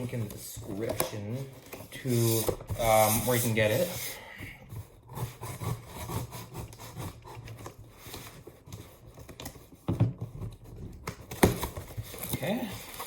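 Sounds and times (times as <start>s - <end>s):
cardboard box rubbing and scraping: 1.9s - 9.1s.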